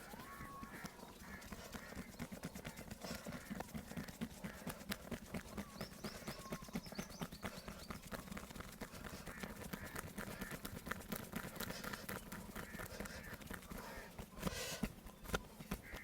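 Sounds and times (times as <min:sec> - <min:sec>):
hands tapping on body: 0:00.2 - 0:16.0.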